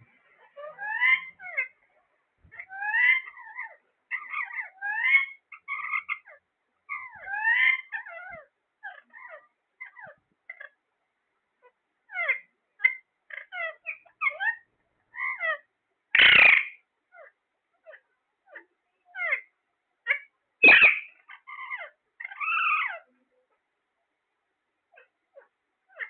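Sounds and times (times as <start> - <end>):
parrot harsh squawks: 0.5 - 1.8, 2.5 - 10.8, 15.2 - 23.1, 24.9 - 26.0
parrot wavering call: 15.2 - 23.1
parrot chirps and whistles: 20.6 - 23.0.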